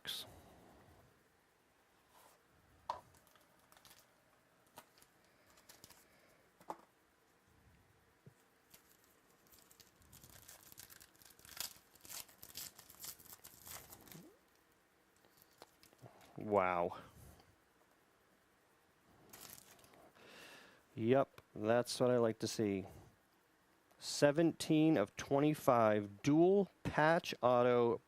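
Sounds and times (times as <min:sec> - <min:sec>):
wrapper crinkling and tearing: 0:03.1 - 0:06.2, 0:08.6 - 0:14.6, 0:15.2 - 0:16.1, 0:19.3 - 0:20.0.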